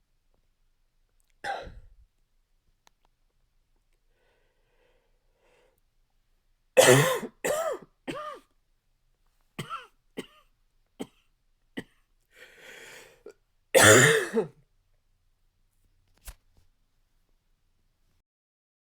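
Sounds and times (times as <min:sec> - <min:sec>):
man coughing: 0:06.8 - 0:08.4, 0:13.8 - 0:14.5.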